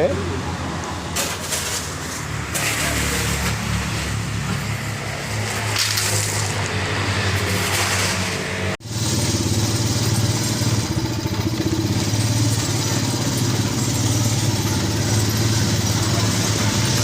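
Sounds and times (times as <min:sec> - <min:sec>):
vehicle engine idling: 0:08.9 - 0:17.0.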